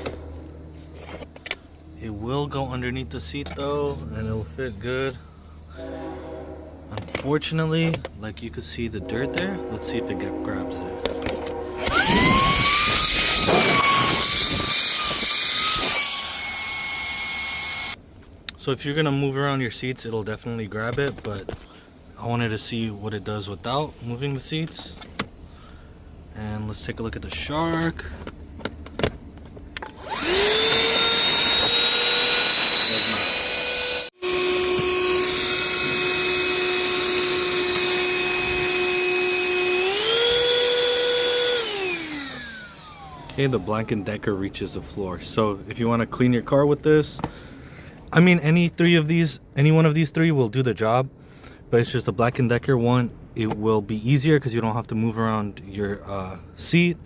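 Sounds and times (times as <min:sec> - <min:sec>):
handheld vacuum motor whine: 0:11.5 - 0:18.0, 0:29.8 - 0:43.7.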